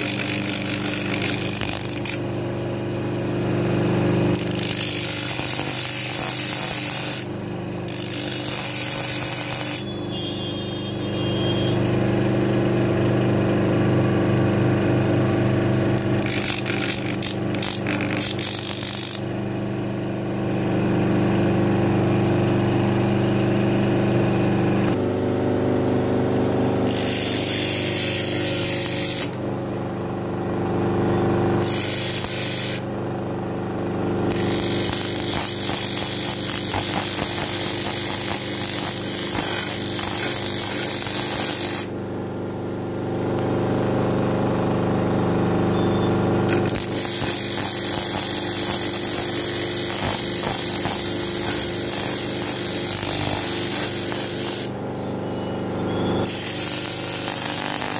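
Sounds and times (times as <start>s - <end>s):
sewing machine motor hum: 0.0s - 2.4s, 3.2s - 11.6s, 15.2s - 19.3s, 26.8s - 29.4s, 31.4s - 32.9s, 34.3s - 42.0s, 45.7s - 54.8s, 56.2s - 57.9s.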